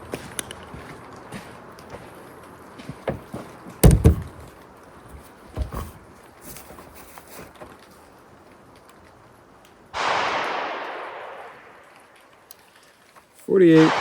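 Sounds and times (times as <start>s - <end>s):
rifle shot: 10.0s - 12.5s, 13.6s - 14.0s.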